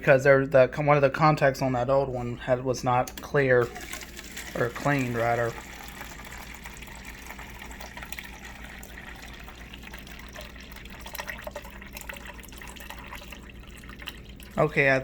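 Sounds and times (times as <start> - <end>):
water dispenser spurting: 3.1 - 15.0
water running into plastic cup: 3.2 - 15.0.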